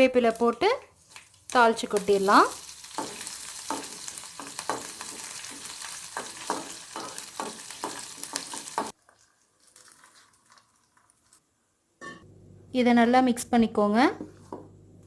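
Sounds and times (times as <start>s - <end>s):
spices sizzling in hot oil: 0.0s - 11.4s.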